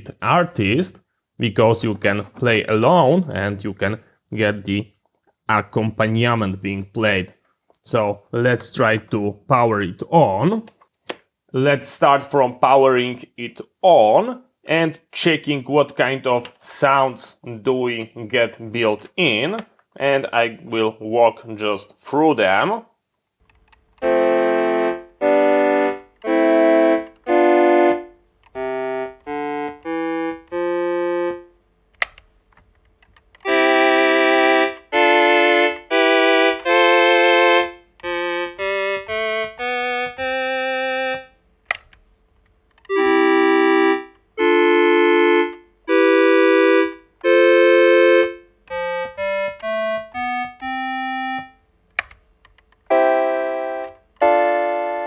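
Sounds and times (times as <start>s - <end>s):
keyboard chords and notes: 24.0s - 32.1s, 33.4s - 41.9s, 42.9s - 52.1s, 52.9s - 55.0s
sharp click: 41.7s - 42.0s.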